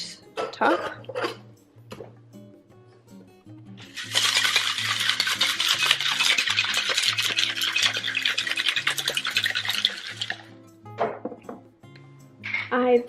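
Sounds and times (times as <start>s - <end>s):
ice rattling in cocktail shaker: 3.8s - 10.6s.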